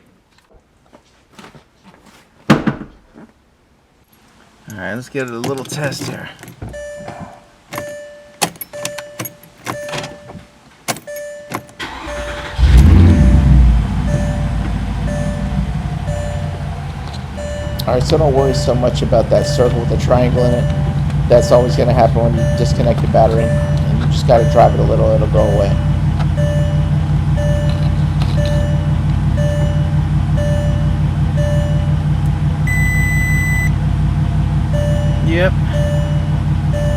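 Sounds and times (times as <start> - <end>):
warning chime beeping: 6.7 - 33.8, 34.5 - 36.9
car engine running loudly: 11.9 - 36.9.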